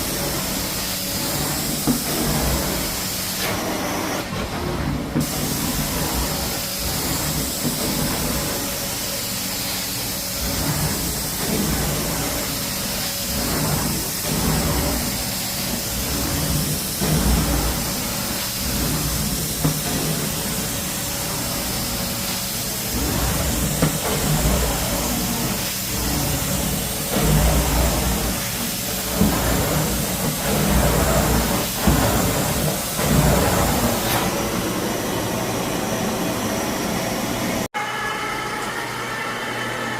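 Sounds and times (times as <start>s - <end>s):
carpet cleaning machine hissing: 0.0s - 38.0s.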